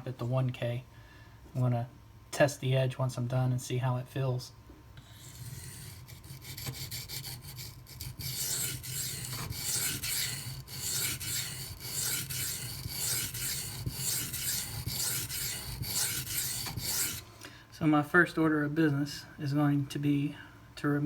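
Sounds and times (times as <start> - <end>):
knife scraping on sharpening stone: 5.1 - 17.2.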